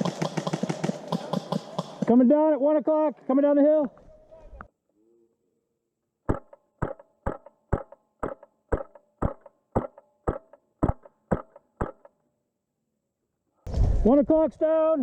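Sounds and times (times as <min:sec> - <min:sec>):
airsoft rifle shots: 0:00.0 - 0:02.2, 0:06.3 - 0:12.1.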